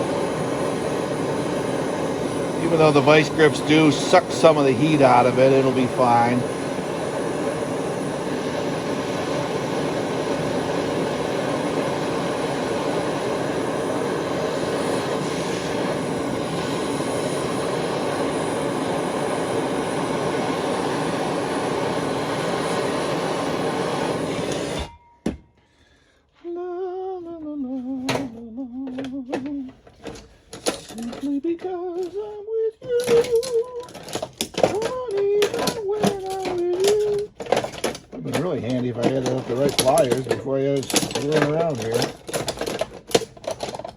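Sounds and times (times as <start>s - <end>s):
gas torch roaring: 0.0s - 25.0s, 33.0s - 43.9s.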